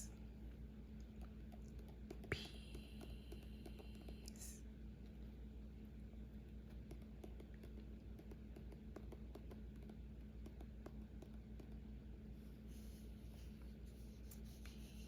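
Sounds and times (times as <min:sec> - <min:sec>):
low steady hum: 0:00.0 - 0:15.0
pen tapping on paper: 0:01.2 - 0:04.3, 0:06.7 - 0:11.8.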